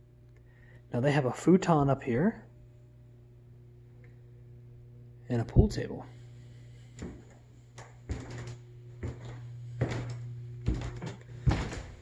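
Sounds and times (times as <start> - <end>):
steady low hum: 0.0 - 12.0
footsteps with dull knocks: 7.0 - 12.0.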